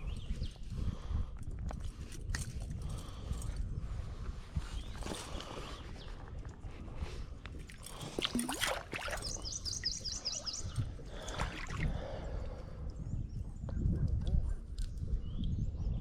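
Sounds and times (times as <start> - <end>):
water sloshing around wading person: 4.8 - 12.6.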